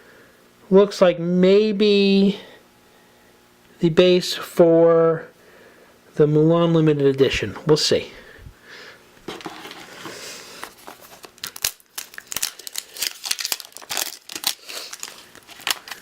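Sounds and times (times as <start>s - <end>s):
wrapper crinkling and tearing: 9.5s - 16.0s.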